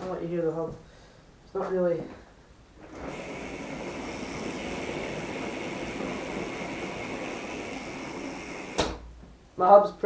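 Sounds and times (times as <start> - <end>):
bicycle hub ratchet buzzing: 2.9 - 8.9.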